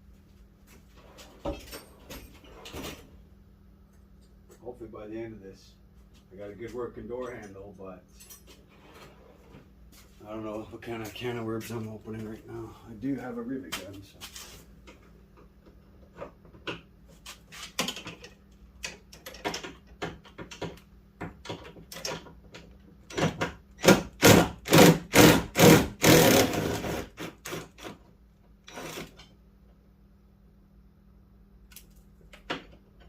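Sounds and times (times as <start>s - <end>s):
hand tools clicking and knocking: 17.6s - 26.6s
loud tool strokes rasping: 24.2s - 27.7s.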